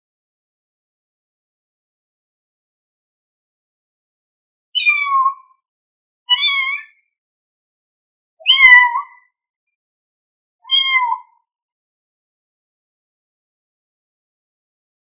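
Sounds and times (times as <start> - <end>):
kitten meowing: 4.8 - 5.5, 6.3 - 7.0, 8.5 - 9.2, 10.7 - 11.3.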